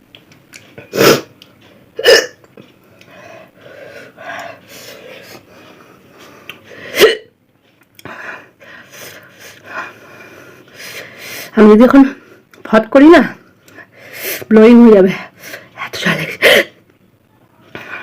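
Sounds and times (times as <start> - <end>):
person hiccuping loudly: 2.0 - 2.4.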